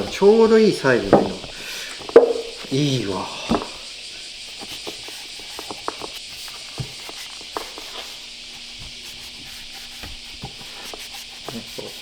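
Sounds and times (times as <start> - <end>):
light knocks: 0.0 - 2.8
cloth rubbing wood: 0.0 - 12.0.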